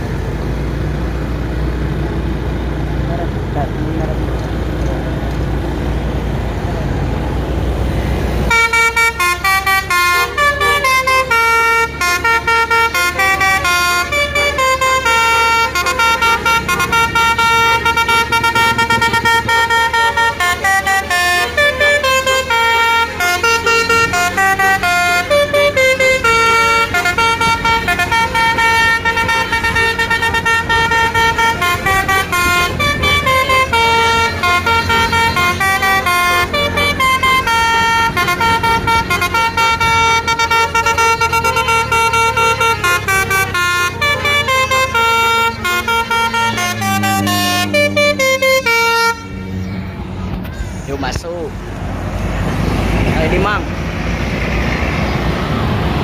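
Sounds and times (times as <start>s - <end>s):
bus engine running: 0.0s - 56.0s
bus horn melody: 8.2s - 50.2s.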